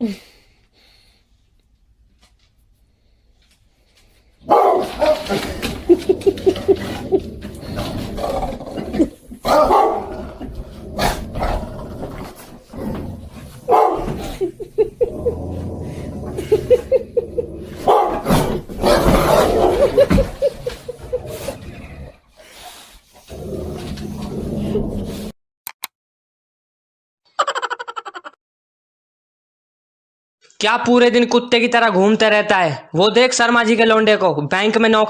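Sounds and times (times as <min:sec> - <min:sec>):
dogs barking: 0:04.4 - 0:07.5, 0:09.4 - 0:10.4, 0:13.6 - 0:15.0, 0:17.7 - 0:20.9.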